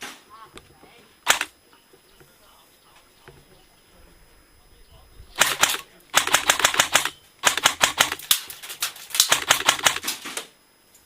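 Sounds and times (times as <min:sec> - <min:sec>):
airsoft rifle firing bursts: 0:01.2 - 0:01.5, 0:05.4 - 0:10.3.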